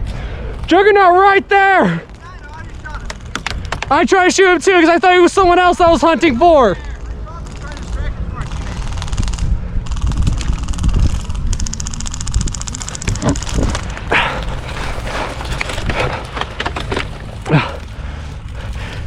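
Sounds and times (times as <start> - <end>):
wind rumbling: 2.0 - 19.0
airsoft gun full-auto burst: 7.4 - 13.6
handling noise: 10.7 - 19.0.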